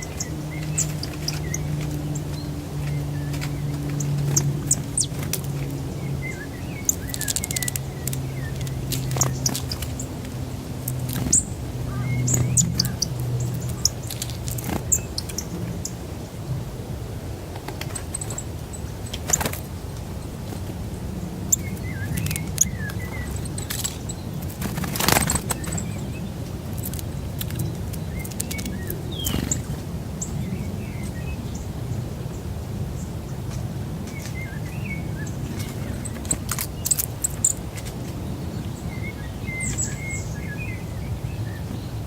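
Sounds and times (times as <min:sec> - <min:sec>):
low drone: 0:00.0 - 0:19.1
small birds chirping: 0:00.0 - 0:42.0.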